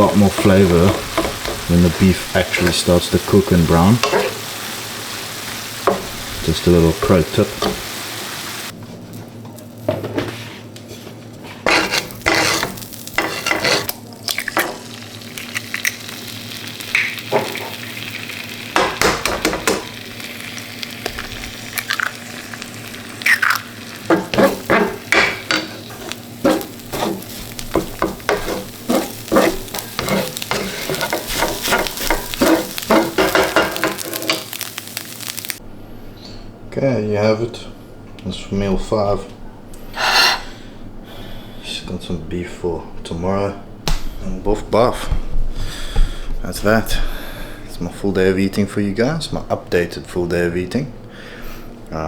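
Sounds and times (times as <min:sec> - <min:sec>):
meat sizzling in a pan: 0:00.0 - 0:08.7, 0:11.7 - 0:35.6
utensil scraping and clicking on pan: 0:11.7 - 0:13.9, 0:24.1 - 0:34.4.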